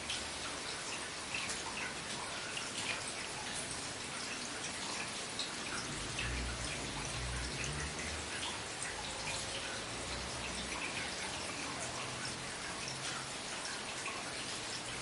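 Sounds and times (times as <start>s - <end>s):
rain drops splattering: 0.0s - 15.0s.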